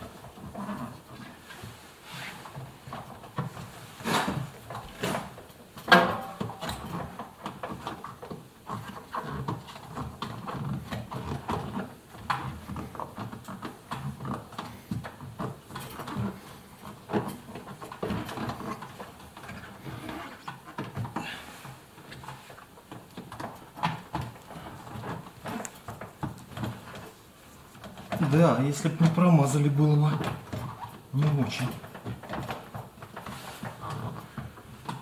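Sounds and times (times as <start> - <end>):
knocks and clicks: 5.8 - 7.1.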